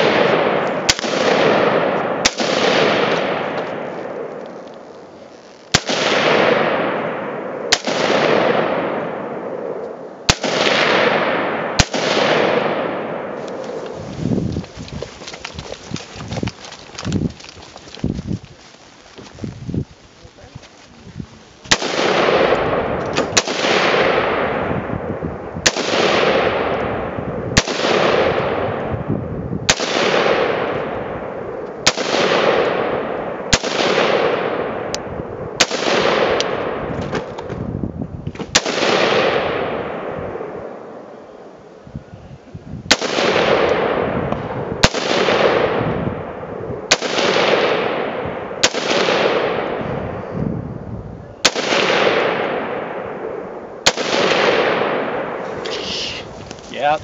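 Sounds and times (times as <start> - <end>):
rifle shots with echo: 0.0 - 4.4, 5.7 - 14.0, 21.7 - 37.3, 38.4 - 41.1, 42.9 - 50.3, 51.4 - 55.6.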